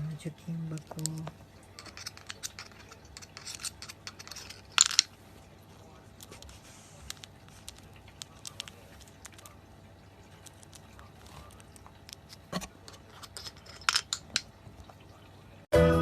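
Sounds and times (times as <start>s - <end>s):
music: 15.7s - 16.0s.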